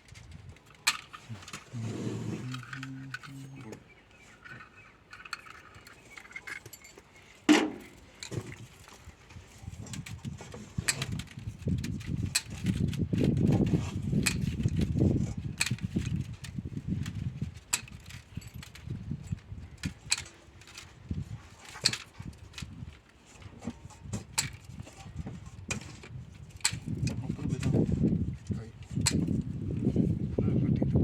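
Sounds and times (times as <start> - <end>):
metallic clicks and knocks: 4.4 - 9.0, 15.6 - 20.9, 21.6 - 27.7.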